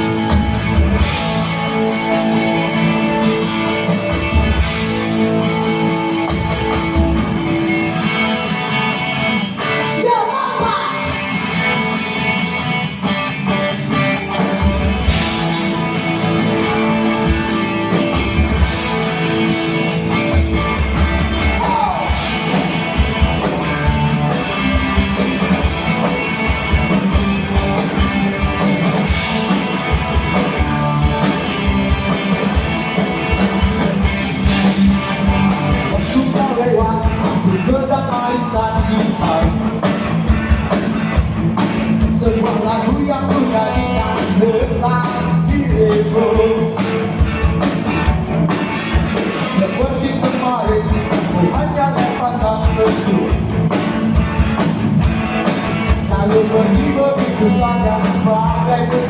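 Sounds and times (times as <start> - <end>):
steady drum beat: 0.0 - 7.7, 14.0 - 59.0
bass: 0.0 - 59.0
electric guitars: 0.0 - 59.0
rock song playing: 0.0 - 59.0.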